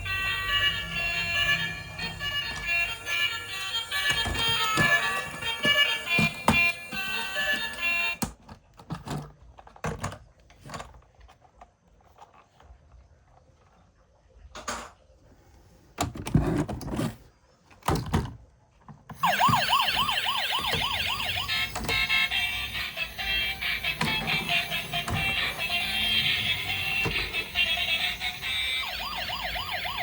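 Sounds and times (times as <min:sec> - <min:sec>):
toy siren warbling: 0:00.0 - 0:08.2, 0:19.2 - 0:30.0.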